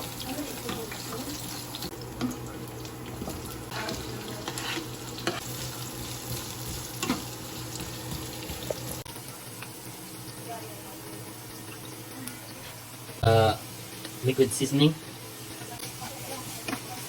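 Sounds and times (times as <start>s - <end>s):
garlic sizzling in oil: 0.0s - 17.0s
utensil scraping a pan: 3.7s - 5.7s.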